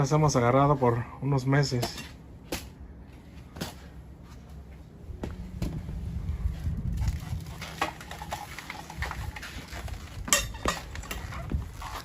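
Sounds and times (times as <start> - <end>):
low rumble: 4.8 - 10.3.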